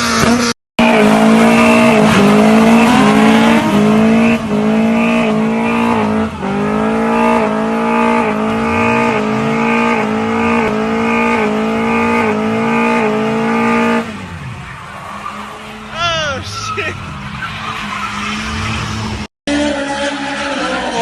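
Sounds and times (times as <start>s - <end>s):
car engine at high revs: 0.0s - 20.0s
tyre squeal: 14.7s - 19.2s.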